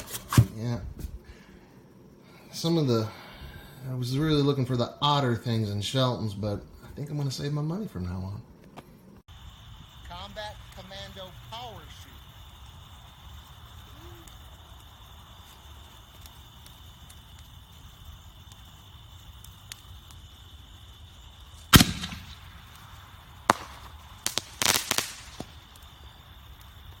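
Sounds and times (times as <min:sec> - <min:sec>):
firework shell bursting: 0:00.0 - 0:00.6, 0:09.3 - 0:27.0
crackling pops: 0:08.6 - 0:27.0
firework launch bang: 0:21.6 - 0:25.7.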